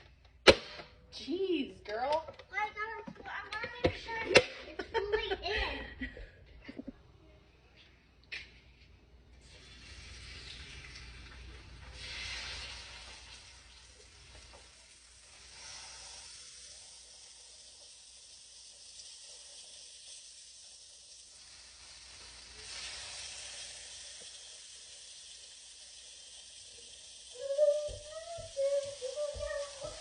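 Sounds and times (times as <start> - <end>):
chicken sizzling in oil: 9.4 - 30.0
high-pitched voice: 27.4 - 30.0.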